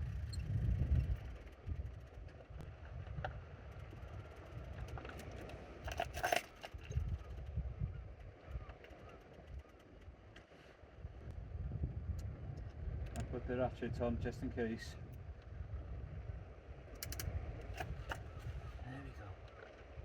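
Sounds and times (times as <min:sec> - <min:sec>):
wind buffeting microphone: 0:00.0 - 0:20.0
sharp clicks and rustling: 0:17.0 - 0:18.6.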